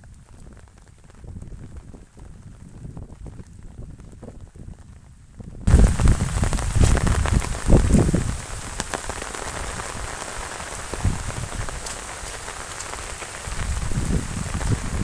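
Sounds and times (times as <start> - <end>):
heavy rain falling: 5.7 - 15.0.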